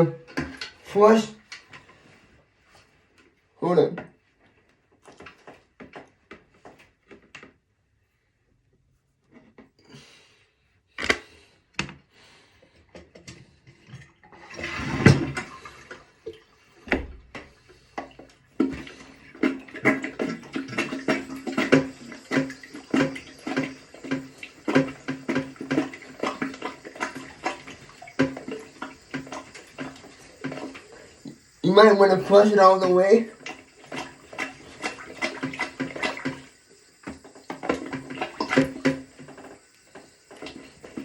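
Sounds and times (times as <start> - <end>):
toilet flush water rushing: 13.3 - 41.0.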